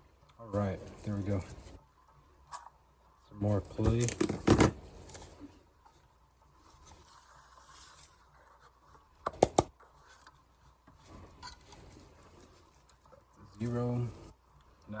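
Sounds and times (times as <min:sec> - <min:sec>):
clay scraping and rubbing: 0:04.2 - 0:14.8.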